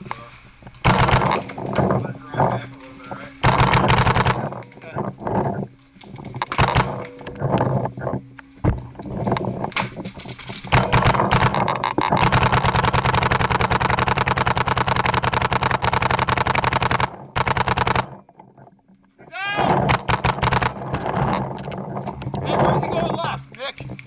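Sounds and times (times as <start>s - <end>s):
paintball markers firing: 0.8s - 1.6s, 10.7s - 18.2s, 19.9s - 20.9s.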